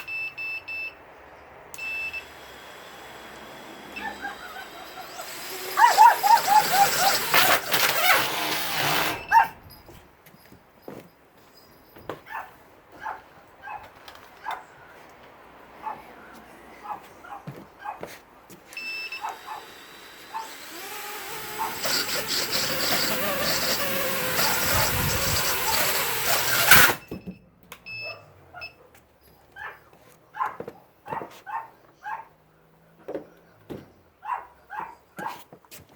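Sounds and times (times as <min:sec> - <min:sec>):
quadcopter motors running unevenly: 0:02.2 - 0:09.2, 0:19.1 - 0:27.0
dog whimpering and yipping: 0:05.8 - 0:07.6, 0:09.2 - 0:09.6.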